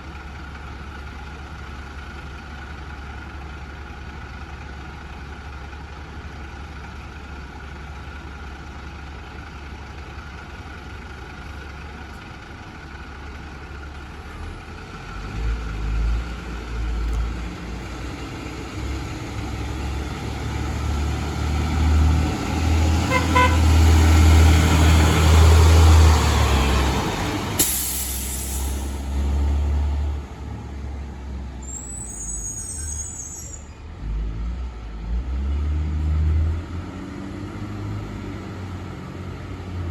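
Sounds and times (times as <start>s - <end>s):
bus diesel engine rumble: 0.0s - 39.9s
sharp hiss of air: 27.6s - 29.1s.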